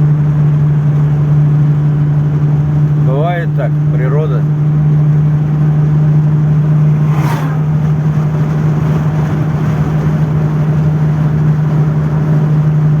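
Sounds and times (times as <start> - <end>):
car engine hum: 0.0 - 13.0
road noise: 0.0 - 13.0
brief whoosh: 6.8 - 8.7.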